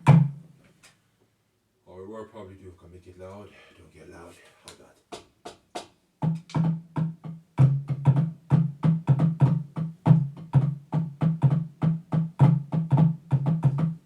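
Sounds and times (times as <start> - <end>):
amplified drum beat: 5.1 - 14.0.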